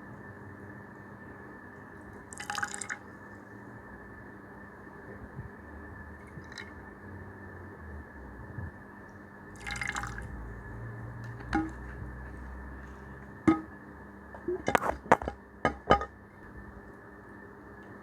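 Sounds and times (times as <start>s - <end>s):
steady background hiss: 0.0s - 18.0s
liquid splash: 2.3s - 3.0s, 9.6s - 10.3s
utensil tapping a container: 11.4s - 12.0s, 13.5s - 13.7s.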